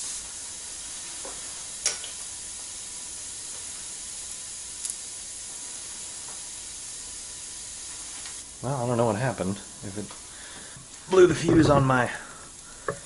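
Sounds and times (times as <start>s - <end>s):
steak sizzling on a grill: 0.0s - 13.0s.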